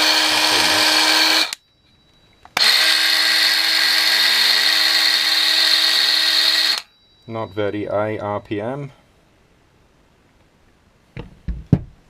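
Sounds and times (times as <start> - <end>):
circular saw motor running: 0.0 - 1.6, 2.6 - 6.9.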